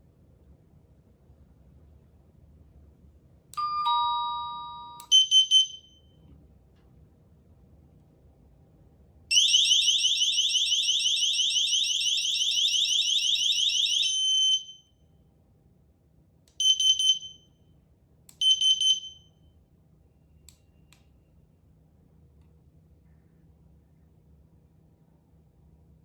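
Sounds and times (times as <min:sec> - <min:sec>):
rising electronic alarm warble: 0:09.3 - 0:14.7.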